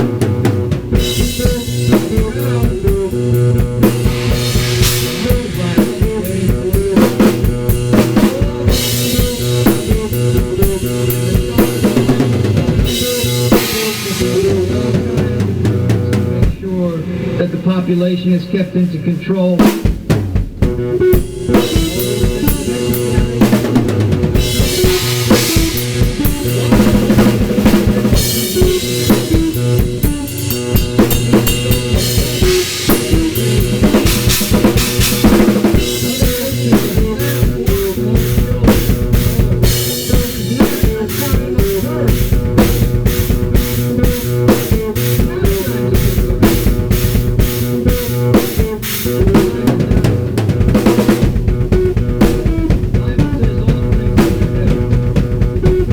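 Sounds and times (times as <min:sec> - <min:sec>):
fast drum kit playing: 0:00.0 - 0:18.2, 0:18.8 - 0:55.9.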